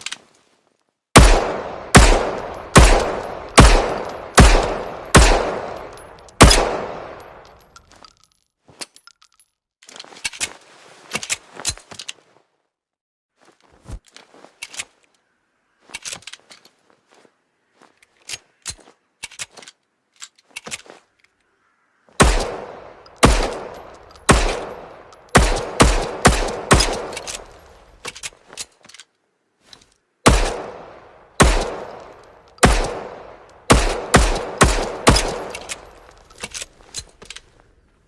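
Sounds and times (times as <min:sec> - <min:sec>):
pistol shots with echo: 0:01.2 - 0:07.4, 0:22.2 - 0:27.5, 0:30.3 - 0:35.9
pistol metallic clicks: 0:01.2 - 0:08.4, 0:22.2 - 0:29.1, 0:30.3 - 0:37.5.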